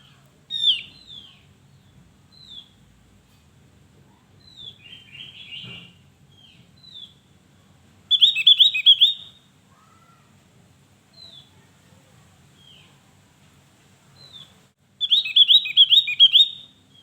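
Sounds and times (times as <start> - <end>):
bird calling: 0.5 - 1.4, 8.1 - 10.3, 14.2 - 17.0
rapid bird chirps: 8.1 - 9.5, 14.2 - 17.0.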